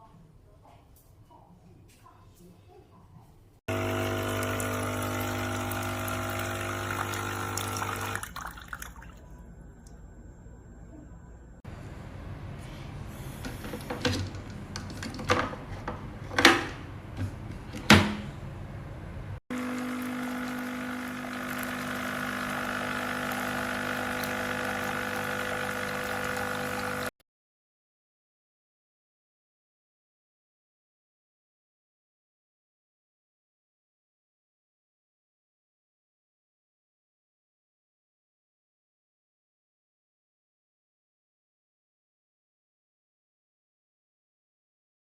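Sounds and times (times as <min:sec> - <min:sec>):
coffee machine pump humming: 0:03.7 - 0:08.8, 0:19.5 - 0:27.1
coffee dripping: 0:03.7 - 0:10.0, 0:19.5 - 0:27.1
liquid streaming out: 0:19.6 - 0:27.1.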